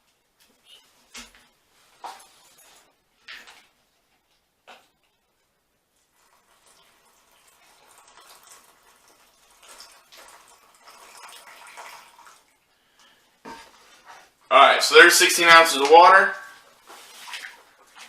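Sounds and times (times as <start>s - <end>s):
hot water pouring into pouch: 6.1s - 12.6s.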